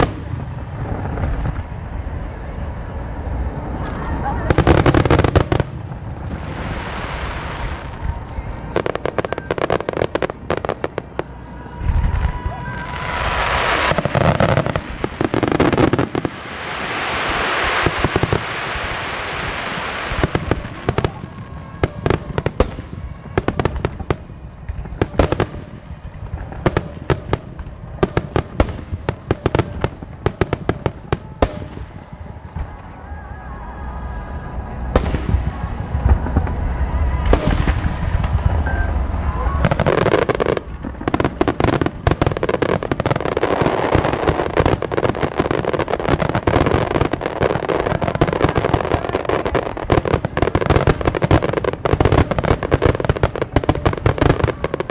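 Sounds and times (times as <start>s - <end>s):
fireworks bursting with deep booms: 0.0s - 54.9s
rushing hiss: 3.3s - 23.8s.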